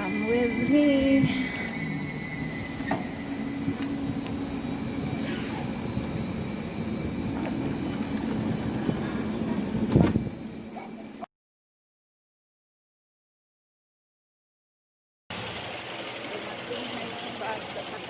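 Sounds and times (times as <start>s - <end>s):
electric train humming and whining: 0.0s - 11.2s, 15.3s - 18.0s.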